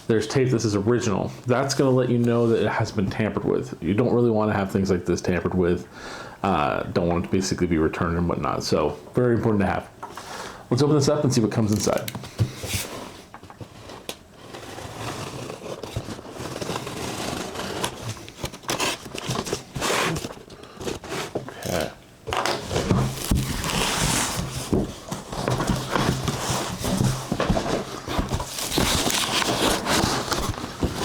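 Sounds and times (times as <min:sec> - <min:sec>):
packing material crinkling: 0:14.7 - 0:31.0.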